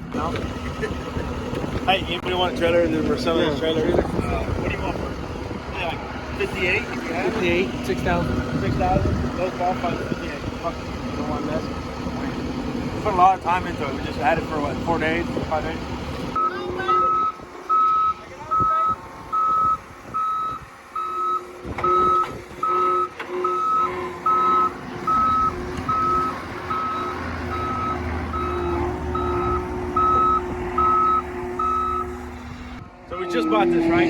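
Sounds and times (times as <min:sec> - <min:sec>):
low engine running: 0:00.0 - 0:34.0
backup alarm beeping: 0:16.4 - 0:32.2.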